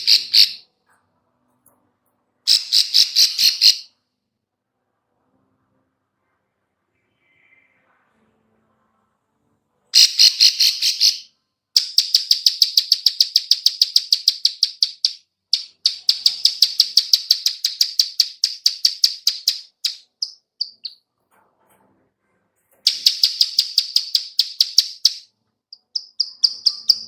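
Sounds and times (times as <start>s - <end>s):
bird clicking call: 11.8s - 21.0s, 22.9s - 25.2s, 25.8s - 27.0s.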